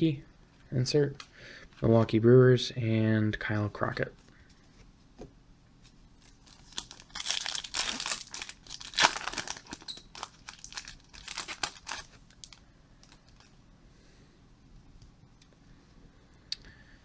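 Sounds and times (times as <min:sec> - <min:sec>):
foil wrapper crinkling and tearing: 0:06.2 - 0:13.6.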